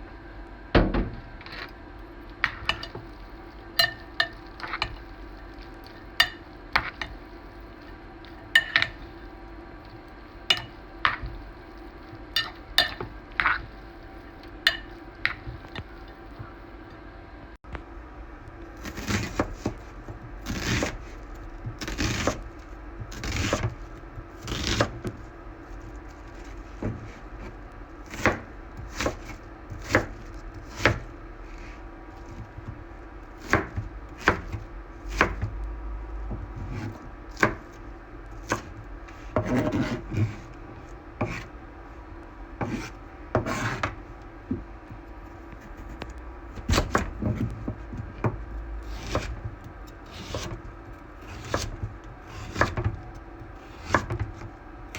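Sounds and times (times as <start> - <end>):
steady low hum: 0.0 - 54.9
knife chopping on cutting board: 23.1 - 23.8, 28.1 - 31.0, 33.4 - 35.5, 36.6 - 37.7, 41.2 - 41.5, 42.6 - 44.6, 46.5 - 50.6, 51.3 - 53.0, 53.6 - 54.5.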